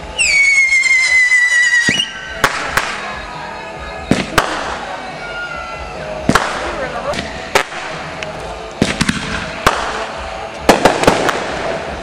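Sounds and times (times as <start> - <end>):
whistling firework shrieking: 0.0 - 2.8
sharp firework bangs: 0.7 - 3.2, 4.0 - 5.0, 6.2 - 8.1, 8.8 - 12.0.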